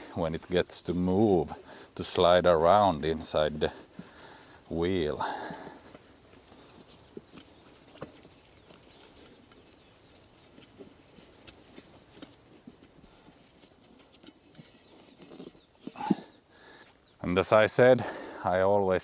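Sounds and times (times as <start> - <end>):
rubber inner tube squeaks: 6.6 - 16.5.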